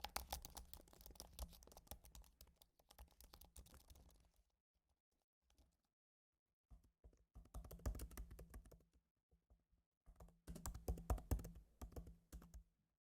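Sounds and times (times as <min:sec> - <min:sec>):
typing on keyboard: 0:00.0 - 0:04.0, 0:07.4 - 0:08.8.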